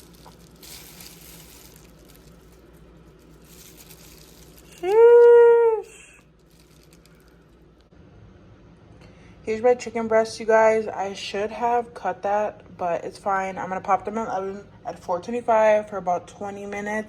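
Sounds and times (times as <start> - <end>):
faint rustling: 0.0 - 5.1.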